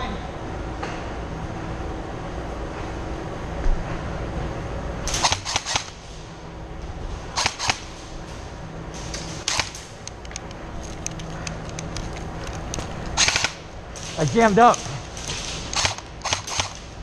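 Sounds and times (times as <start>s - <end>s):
airsoft gun firing bursts: 5.1s - 6.0s, 7.3s - 8.0s, 9.4s - 10.0s, 13.2s - 17.0s.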